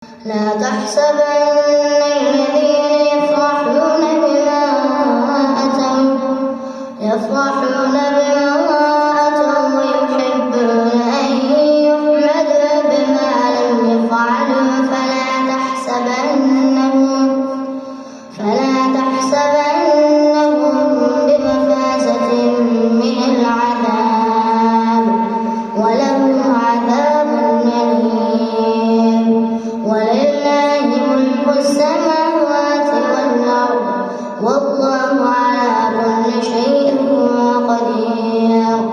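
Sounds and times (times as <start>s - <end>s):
child reciting melodically: 0.0s - 38.9s.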